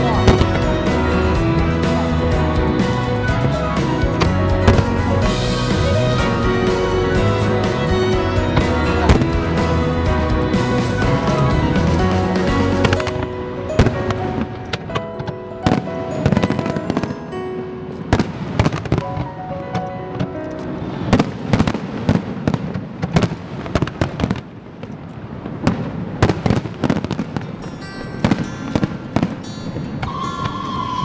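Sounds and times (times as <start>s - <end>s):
fireworks bursting: 0.0s - 19.5s, 20.2s - 31.0s
fireworks crackling: 0.0s - 19.5s, 20.1s - 31.0s
music: 0.0s - 21.2s, 27.5s - 31.0s.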